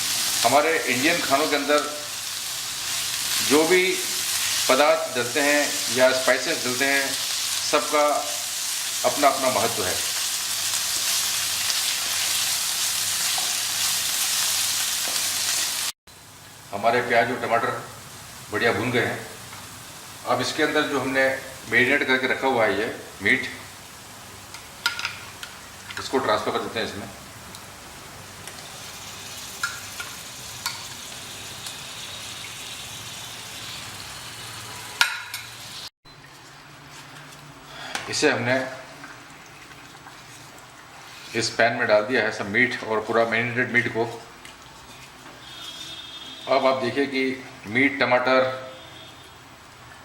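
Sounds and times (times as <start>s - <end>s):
onions and tomatoes sizzling in a pan: 0.0s - 26.5s, 27.3s - 35.9s.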